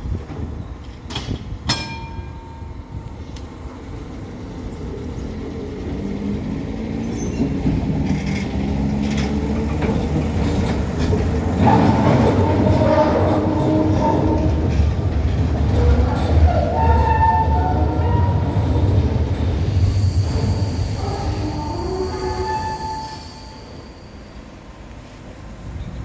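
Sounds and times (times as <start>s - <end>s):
tram approaching on rails: 0.0s - 26.0s
ringing metallic clanks: 1.1s - 3.5s
wheels squealing: 3.6s - 24.5s.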